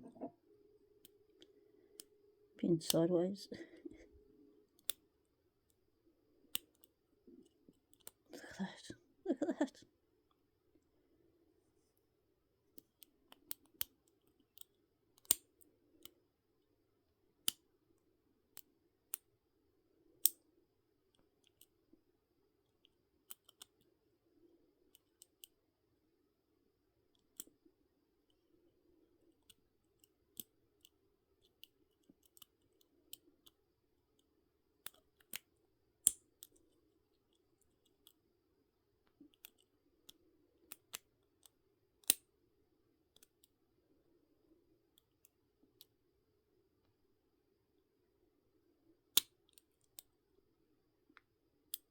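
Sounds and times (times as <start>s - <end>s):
faint steady hum: 0.0s - 51.9s
lock pick clicking in lock: 12.8s - 15.5s, 23.3s - 23.8s, 34.8s - 36.6s, 40.7s - 42.3s.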